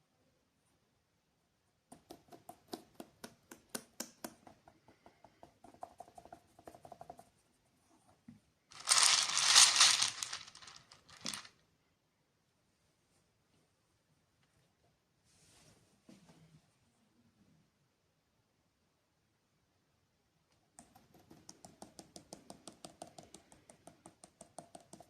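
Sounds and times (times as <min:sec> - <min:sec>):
candy wrapper crinkling: 0:08.7 - 0:11.5.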